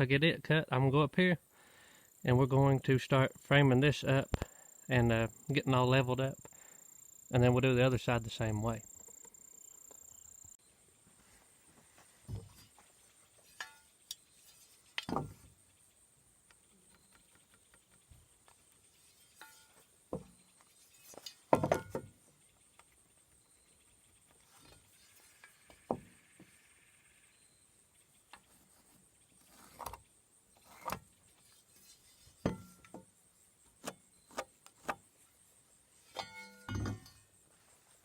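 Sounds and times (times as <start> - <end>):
wood and tools knocking: 12.2 - 13.8, 14.4 - 15.5, 16.9 - 22.2, 24.3 - 26.6, 32.2 - 33.1, 36.1 - 37.3.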